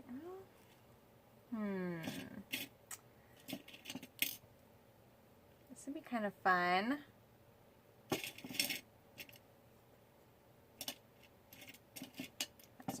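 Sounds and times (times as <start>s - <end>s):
small items clicking and clinking: 3.4s - 4.4s, 8.1s - 9.4s, 10.8s - 13.0s.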